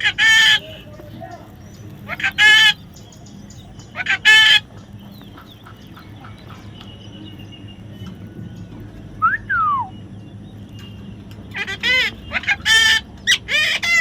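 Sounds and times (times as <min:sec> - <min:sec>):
parrot calling: 0:00.0 - 0:06.6, 0:11.5 - 0:14.0
parrot whistled call: 0:09.2 - 0:10.0.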